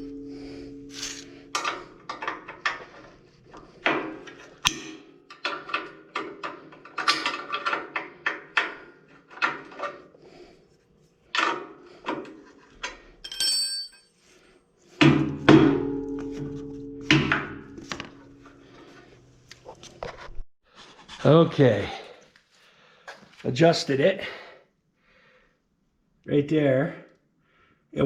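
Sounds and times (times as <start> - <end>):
brief high ringing: 0.0 - 1.6
hand tools clanking on metal blade: 0.0 - 3.1.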